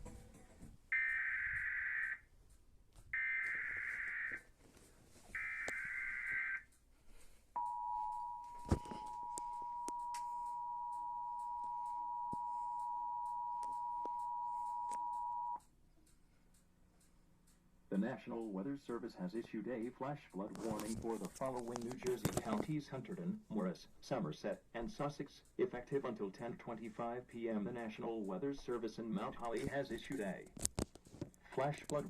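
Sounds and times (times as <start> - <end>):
two-tone alert signal: 7.6 - 15.6.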